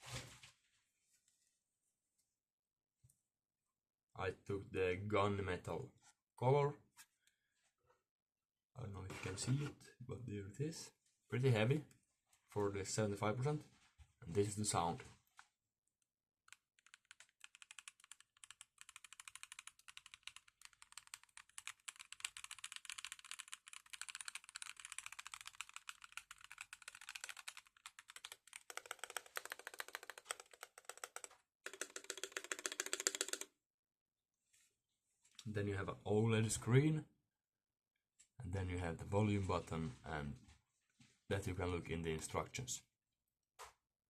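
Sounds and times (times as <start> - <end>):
mechanical keyboard typing: 16.5 - 33.5.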